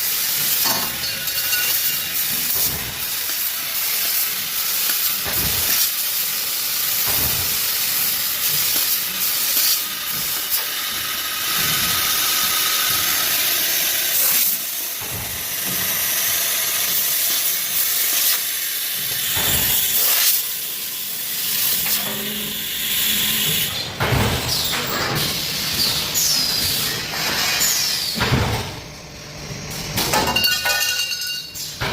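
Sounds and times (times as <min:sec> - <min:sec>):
gas jet hissing: 0:00.0 - 0:23.7.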